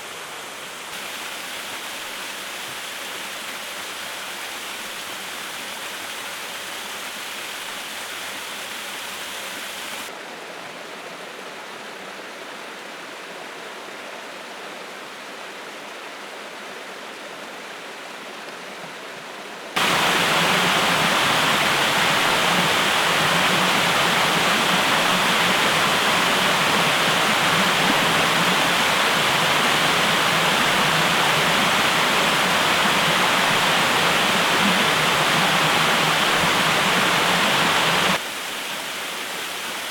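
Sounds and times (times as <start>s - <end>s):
waterfall rushing: 19.8s - 39.9s.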